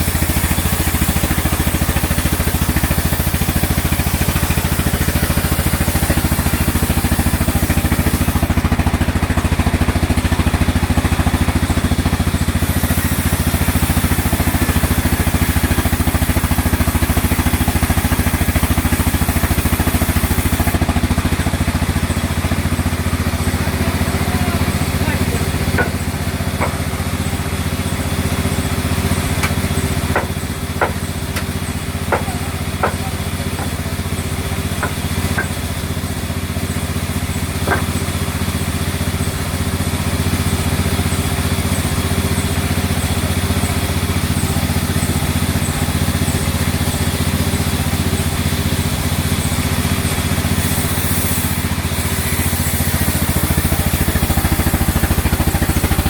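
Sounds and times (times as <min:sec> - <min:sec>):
engine running: 0:00.0 - 0:56.0
sharp knocks: 0:25.6 - 0:26.9, 0:29.4 - 0:33.9, 0:34.8 - 0:35.8, 0:37.6 - 0:38.1.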